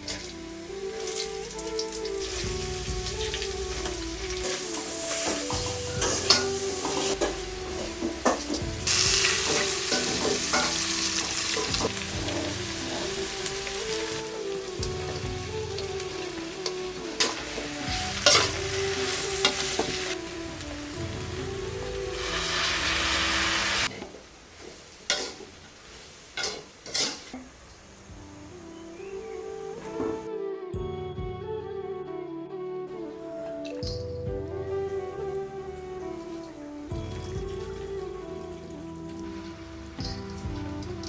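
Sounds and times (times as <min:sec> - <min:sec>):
food sizzling in a pan: 0:00.0 - 0:30.0, 0:34.6 - 0:41.0
utensil stirring food: 0:03.1 - 0:20.2, 0:22.3 - 0:27.5.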